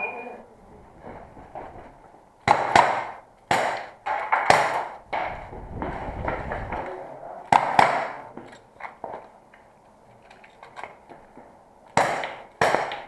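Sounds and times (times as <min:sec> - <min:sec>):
airsoft revolver shots: 0:02.4 - 0:05.3, 0:07.5 - 0:08.3, 0:12.0 - 0:13.0.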